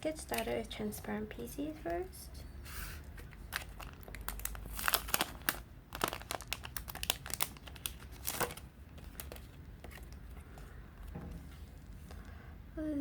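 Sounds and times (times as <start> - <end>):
plastic packaging crinkling: 0.0 - 1.2, 3.0 - 10.6.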